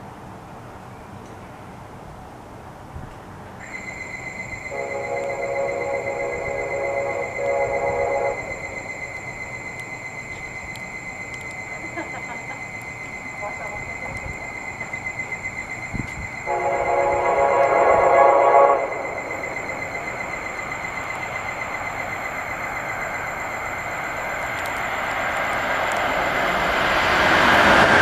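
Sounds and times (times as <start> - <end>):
approaching train rumble: 0.0 - 28.0
train horn chord: 4.7 - 8.9, 16.4 - 19.6.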